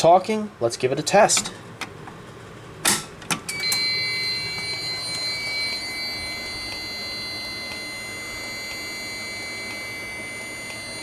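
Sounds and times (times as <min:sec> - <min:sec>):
alarm buzzer high-pitched tone: 0:03.5 - 0:11.0
second higher tone: 0:03.5 - 0:11.0.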